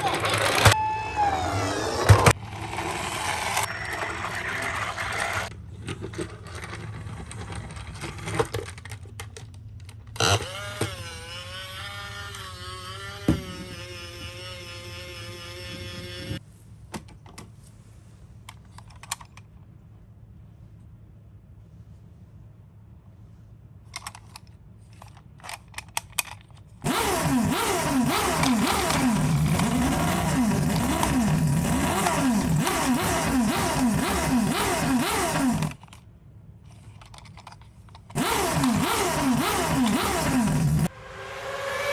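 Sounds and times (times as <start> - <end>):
plastic toy cars clattering: 0.0 - 0.8, 1.5 - 11.6, 18.5 - 19.6, 23.8 - 36.0, 36.6 - 40.9
toy electronic siren tone: 0.2 - 2.3, 2.9 - 5.5.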